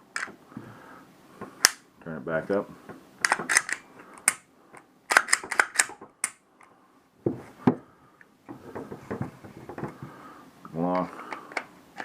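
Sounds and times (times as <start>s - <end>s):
pistol parts clicking together: 1.6s - 1.8s, 3.2s - 6.4s.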